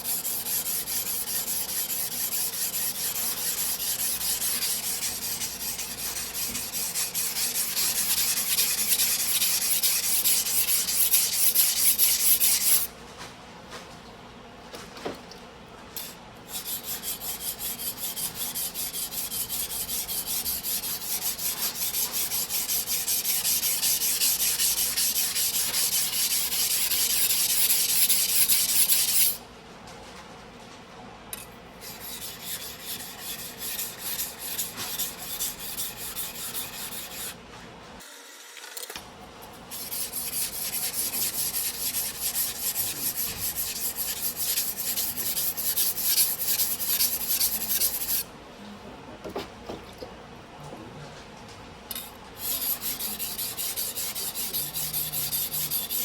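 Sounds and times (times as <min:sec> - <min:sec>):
knife scraping on whetstone: 0:00.0 - 0:12.9, 0:16.0 - 0:29.4, 0:31.8 - 0:37.4, 0:39.7 - 0:48.2, 0:51.9 - 0:56.0.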